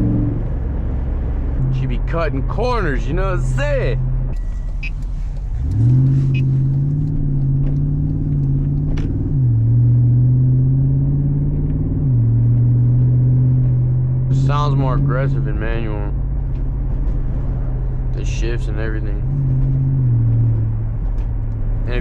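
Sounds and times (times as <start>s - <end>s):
car engine accelerating hard: 0.0s - 22.0s.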